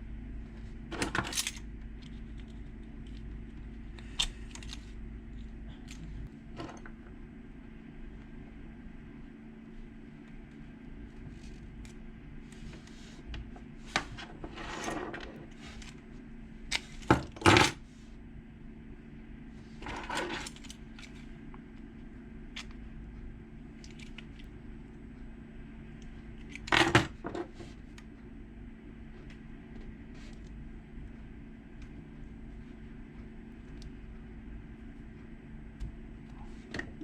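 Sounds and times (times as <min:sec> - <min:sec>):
steady low hum: 0:00.0 - 0:37.0
metal lock parts clicking: 0:01.0 - 0:01.6.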